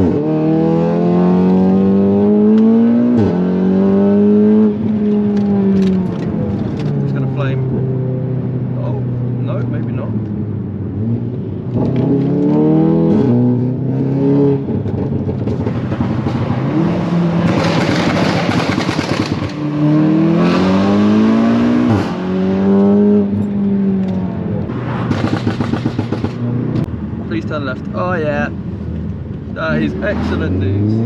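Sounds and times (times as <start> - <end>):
car engine accelerating hard: 11.0 - 28.2, 29.6 - 31.0.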